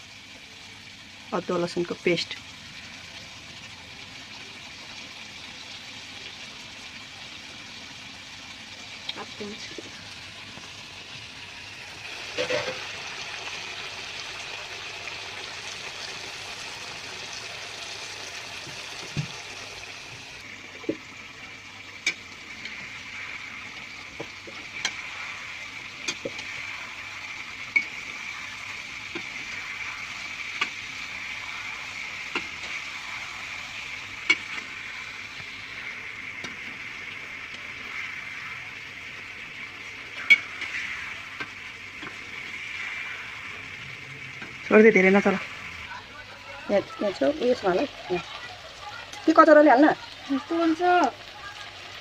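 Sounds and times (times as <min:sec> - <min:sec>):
chicken sizzling in hot oil: 0:00.0 - 0:52.0
utensil clicking against pan: 0:22.0 - 0:22.8, 0:24.2 - 0:25.1, 0:26.0 - 0:26.5, 0:27.7 - 0:28.0, 0:30.5 - 0:30.8, 0:32.2 - 0:32.8, 0:34.2 - 0:34.7, 0:40.2 - 0:42.2.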